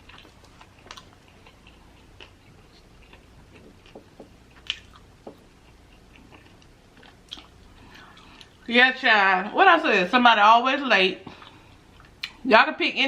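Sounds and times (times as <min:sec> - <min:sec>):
chewing crispy food: 0:00.0 - 0:08.7.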